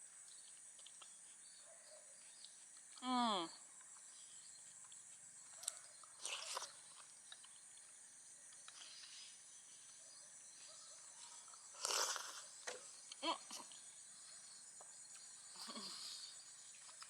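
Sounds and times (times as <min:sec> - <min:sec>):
high-pitched insect chorus: 0:03.5 - 0:17.0.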